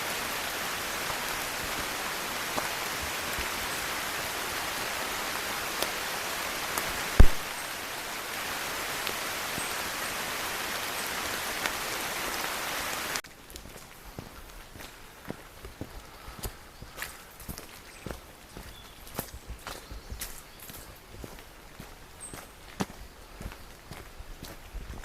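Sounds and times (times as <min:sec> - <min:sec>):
rain hiss: 0:00.0 - 0:25.0
low thump: 0:07.2 - 0:07.4.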